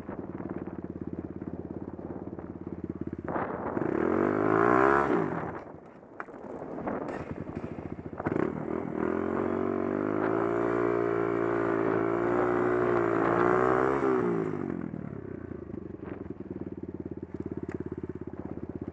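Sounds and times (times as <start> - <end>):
engine revving and idling: 3.3 - 5.7, 7.1 - 18.9.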